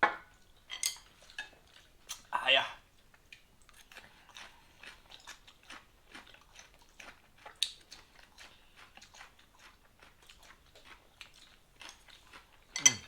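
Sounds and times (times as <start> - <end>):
person chewing crunchy food: 2.9 - 13.0.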